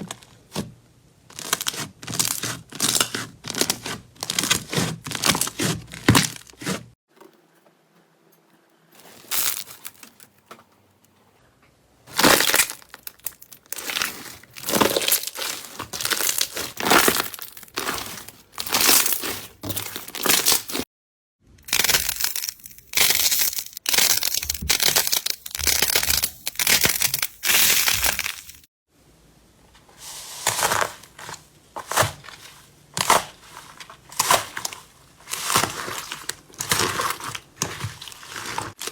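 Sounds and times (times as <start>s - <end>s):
slime squelching and crackling: 1.3s - 7.0s, 12.1s - 20.8s, 21.6s - 28.7s, 31.8s - 38.9s.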